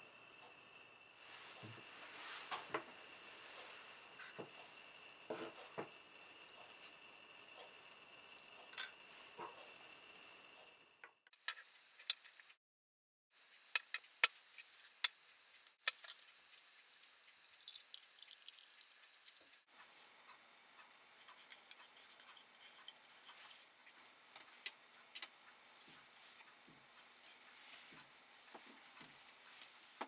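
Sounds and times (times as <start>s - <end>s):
small hard parts clicking: 15.8s - 19.7s.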